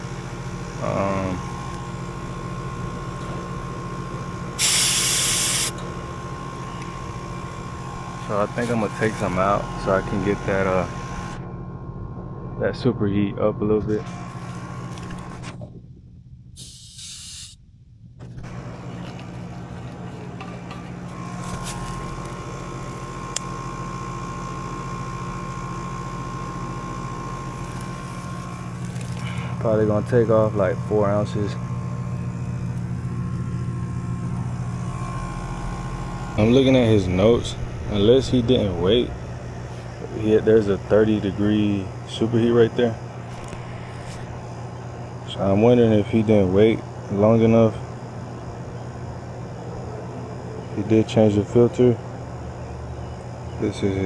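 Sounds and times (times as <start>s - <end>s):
thin steady whine: 0.0s - 15.6s, 16.4s - 17.7s, 18.5s - 54.0s
air conditioning unit humming: 0.0s - 54.0s
refrigerant hissing from hose: 4.6s - 5.8s, 16.6s - 17.6s.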